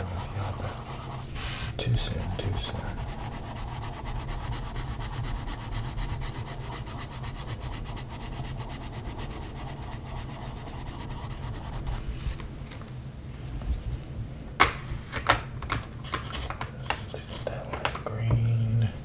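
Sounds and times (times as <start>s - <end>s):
crayon rubbing on paper: 0.0s - 12.2s.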